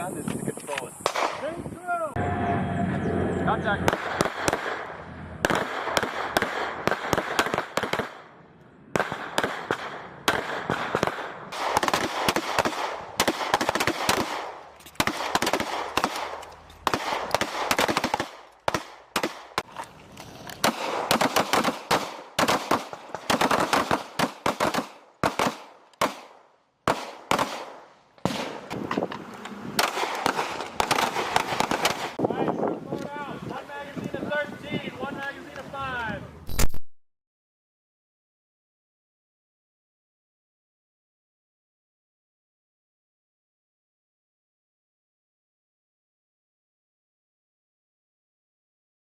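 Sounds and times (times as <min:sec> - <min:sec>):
pistol shots: 0:01.0 - 0:01.5, 0:03.9 - 0:08.4, 0:09.0 - 0:19.7, 0:20.6 - 0:28.7, 0:29.8 - 0:32.2.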